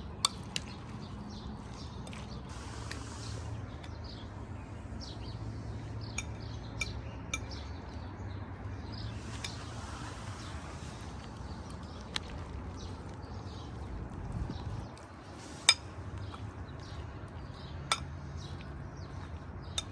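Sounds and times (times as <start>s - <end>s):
birds chirping: 0.0s - 19.9s.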